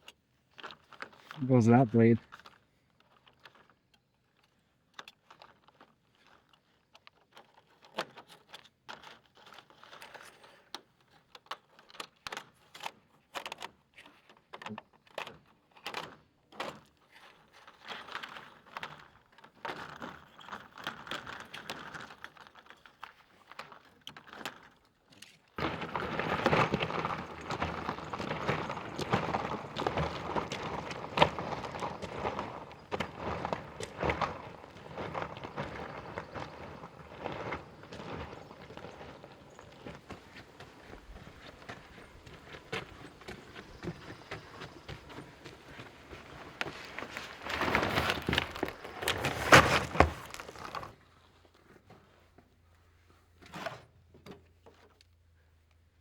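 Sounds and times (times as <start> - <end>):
plastic membrane crinkling: 2.3 - 51.1
steady rustling: 25.6 - 51.0.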